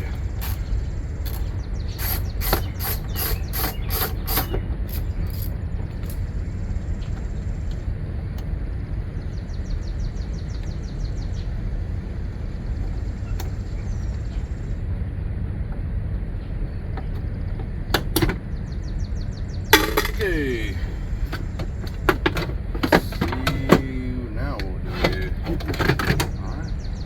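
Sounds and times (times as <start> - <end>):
hand ratchet clicking: 1.3 - 6.2
sharp metallic knocks: 19.8 - 20.3.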